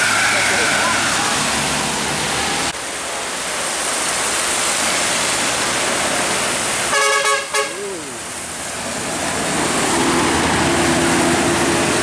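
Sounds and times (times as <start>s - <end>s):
steady rain: 0.0s - 12.0s
traffic on wet road: 0.0s - 12.0s
vehicle horn blast: 6.9s - 7.9s.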